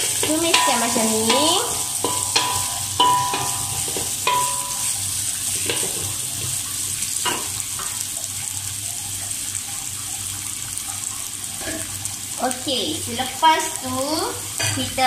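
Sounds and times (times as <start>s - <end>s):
utensil clinking against wok: 0.0s - 6.2s
vegetables sizzling in a wok: 0.0s - 15.0s.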